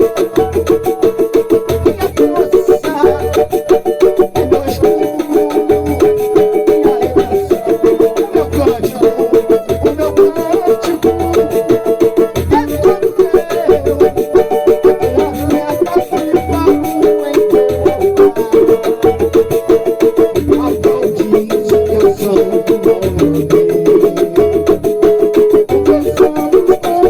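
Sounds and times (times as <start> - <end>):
banjo picking: 0.0 - 27.0
low repeating beat: 19.1 - 25.2.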